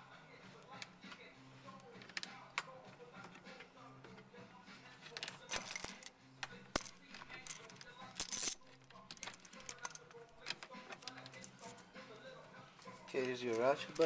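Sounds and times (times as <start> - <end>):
metal tools clinking: 5.1 - 6.1, 6.8 - 11.8.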